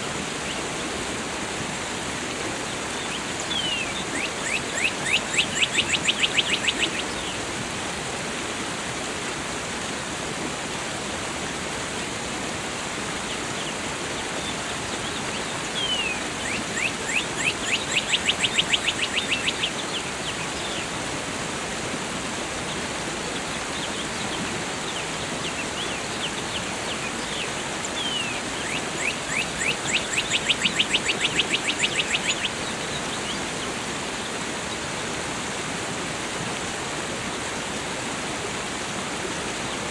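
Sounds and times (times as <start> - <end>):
waterfall rushing: 0.0 - 39.9
songbird trilling: 3.1 - 7.3, 15.8 - 20.0, 25.5 - 33.4.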